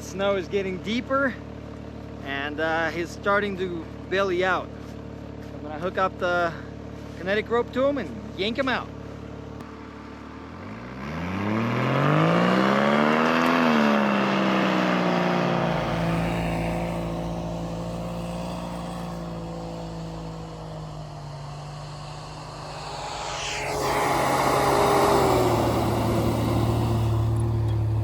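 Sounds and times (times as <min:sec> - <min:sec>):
vehicle engine revving: 0:09.6 - 0:28.0
rushing hiss: 0:15.6 - 0:28.0.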